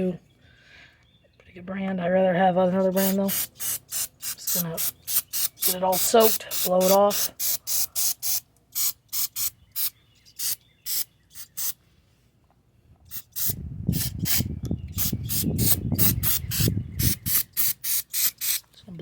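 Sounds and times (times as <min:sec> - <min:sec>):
aerosol spray spritzes: 0:03.0 - 0:11.8, 0:13.1 - 0:14.4, 0:15.0 - 0:18.6.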